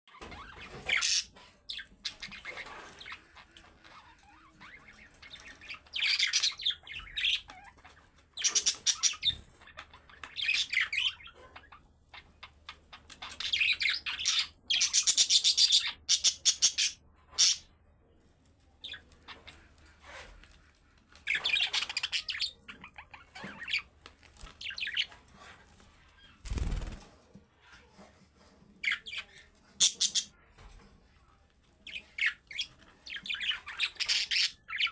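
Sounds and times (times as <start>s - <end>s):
budgerigars chirping and warbling: 0.2s - 17.7s, 21.2s - 25.6s, 28.8s - 30.7s, 31.8s - 34.9s.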